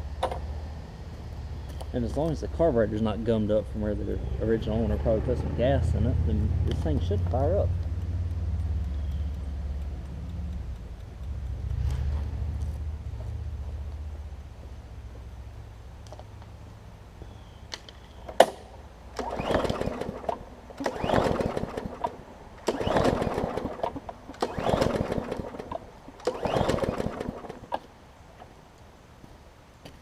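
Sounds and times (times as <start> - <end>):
lawn mower engine pull-starting: 4.4 - 7.8, 18.2 - 28.5.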